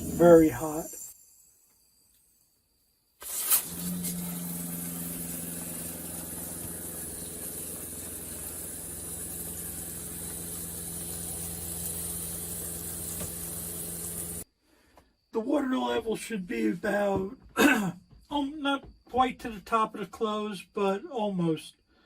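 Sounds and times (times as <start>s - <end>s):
shower head spraying water: 3.2s - 14.4s
low mechanical hum: 3.6s - 14.4s.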